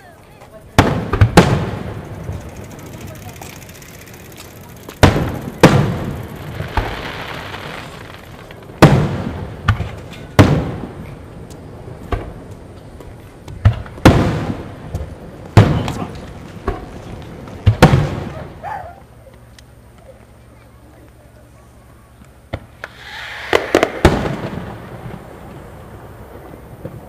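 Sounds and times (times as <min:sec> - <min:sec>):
fireworks booming with echo: 0:00.4 - 0:03.5, 0:04.6 - 0:19.2, 0:22.4 - 0:27.0.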